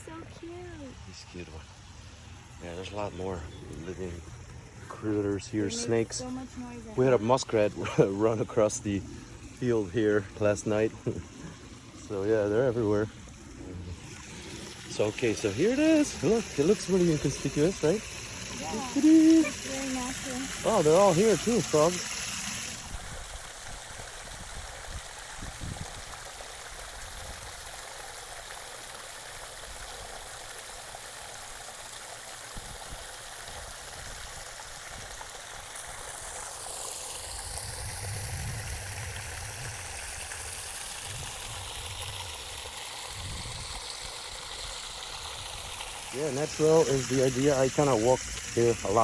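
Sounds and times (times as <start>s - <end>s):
water running over rocks: 0.0s - 49.0s.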